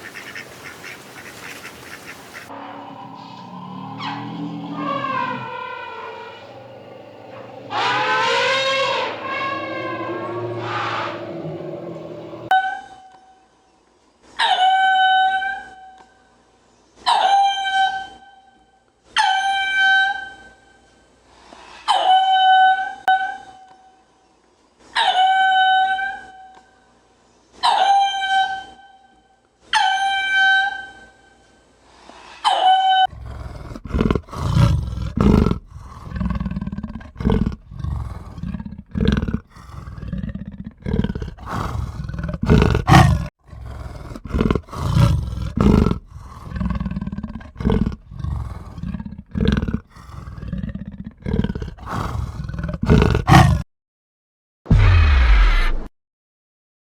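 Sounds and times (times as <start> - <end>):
high clear animal calls: 0.0 - 12.5
deep rough animal calls: 2.4 - 12.5, 33.1 - 53.6.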